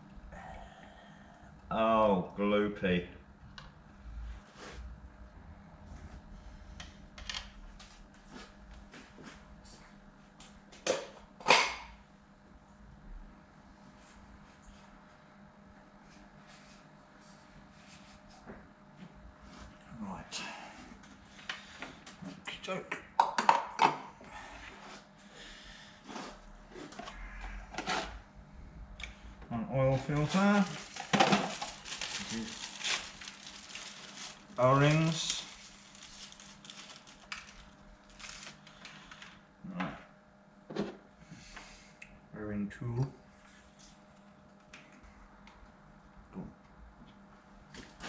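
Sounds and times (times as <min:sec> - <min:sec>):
faint steady hum: 0:00.0 - 0:48.0
parts and packaging clattering: 0:29.9 - 0:39.2.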